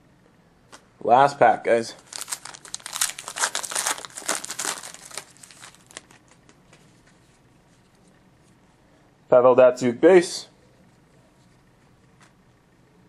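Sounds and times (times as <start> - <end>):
wrapper tearing and crinkling: 2.0 - 6.4.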